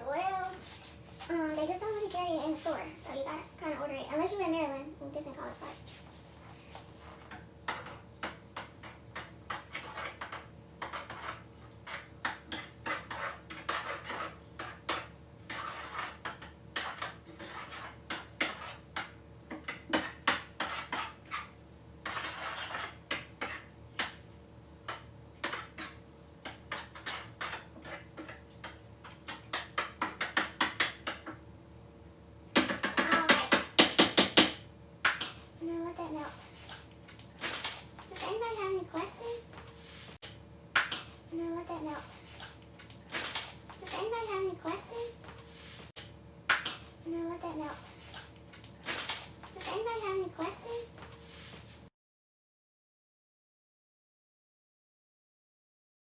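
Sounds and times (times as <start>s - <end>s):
utensil scraping a bowl: 5.6s - 24.2s, 24.9s - 31.2s.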